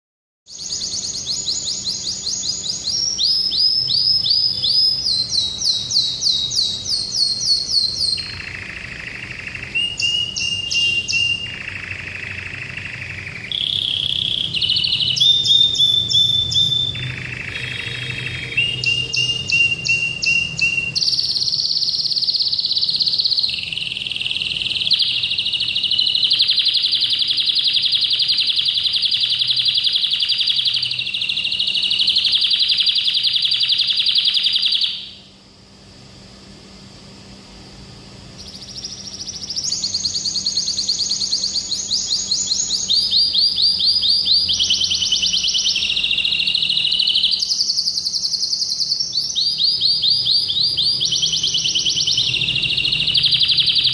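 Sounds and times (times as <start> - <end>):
canary singing trills: 0.5 - 35.4, 38.4 - 53.9.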